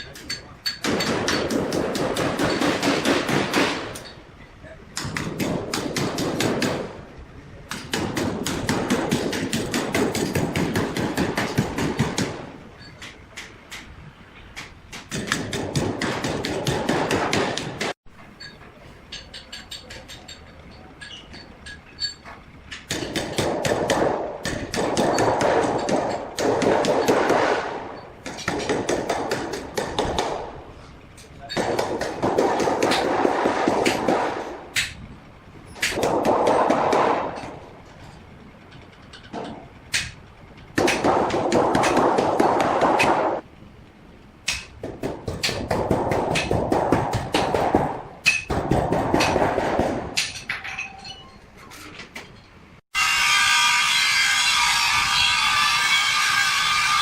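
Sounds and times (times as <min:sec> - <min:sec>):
hammering on metal: 0:00.0 - 0:04.2, 0:07.7 - 0:13.5, 0:14.6 - 0:18.0, 0:22.9 - 0:27.6, 0:28.2 - 0:30.4, 0:31.4 - 0:35.0, 0:40.8 - 0:43.4, 0:44.5 - 0:51.0.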